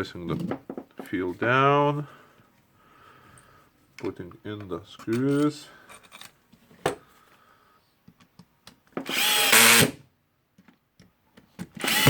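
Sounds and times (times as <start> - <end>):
electric screwdriver running: 9.1 - 10.0, 11.8 - 12.0.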